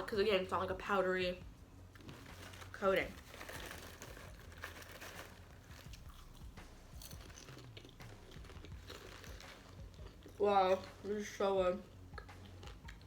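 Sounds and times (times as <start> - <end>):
person chewing popcorn: 1.9 - 11.1, 11.8 - 13.0.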